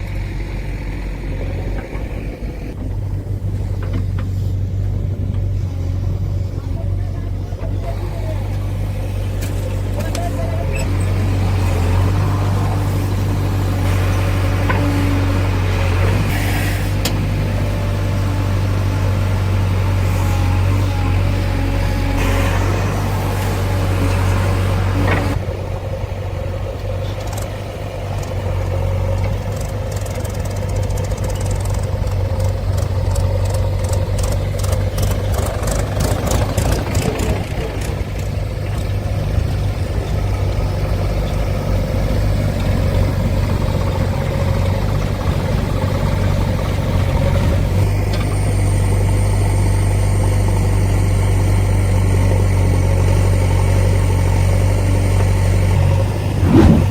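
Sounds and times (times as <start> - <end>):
diesel engine idling: 0.0 - 56.9
evenly spaced clicks: 29.2 - 37.9.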